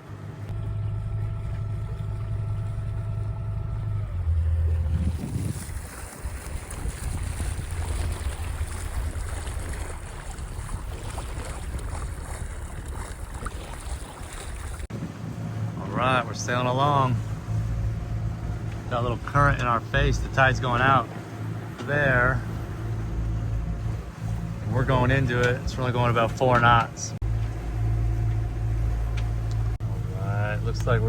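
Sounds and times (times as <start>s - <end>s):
boat engine running: 0.0s - 31.0s
water passing boat: 0.0s - 31.0s
low rumble: 0.2s - 31.0s
wind on microphone: 4.1s - 16.2s.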